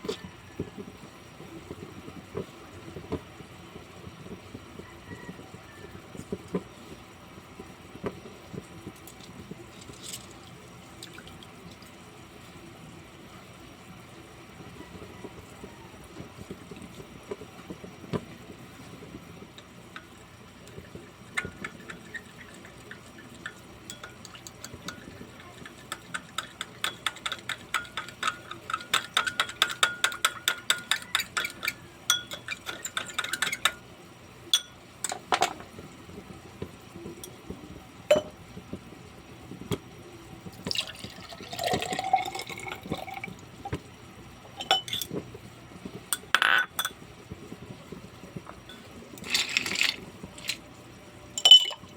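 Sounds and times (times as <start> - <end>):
spoon clinking in a glass: 21.4 - 33.8, 34.6 - 34.8, 38.1 - 38.4, 44.6 - 45.1, 51.4 - 51.9.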